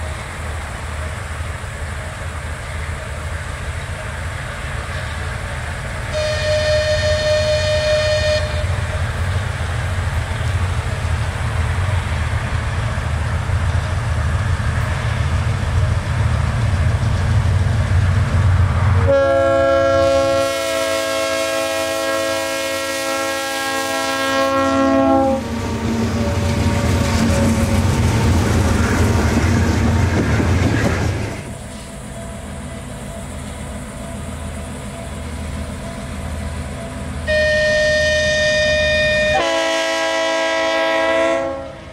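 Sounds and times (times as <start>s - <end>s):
train rumbling: 0.0s - 41.9s
train horn chord: 6.1s - 8.9s, 19.0s - 25.6s, 37.2s - 41.9s.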